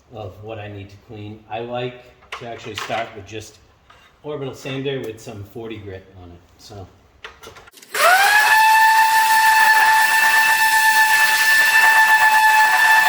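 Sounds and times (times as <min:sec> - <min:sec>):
orbital sander whining: 0:07.8 - 0:13.0.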